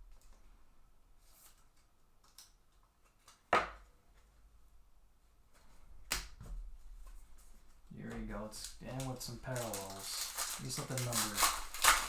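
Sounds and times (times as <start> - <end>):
cards scratching and rustling: 8.0 - 12.0.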